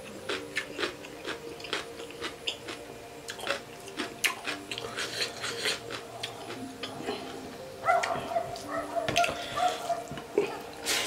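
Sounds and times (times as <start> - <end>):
chewing with wet mouth smacks: 0.3 - 6.9.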